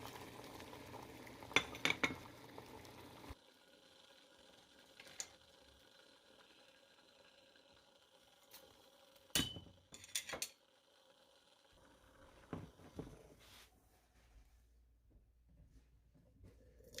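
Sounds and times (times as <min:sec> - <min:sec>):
kitchenware clinking and knocking: 0:01.6 - 0:02.3, 0:09.3 - 0:10.6.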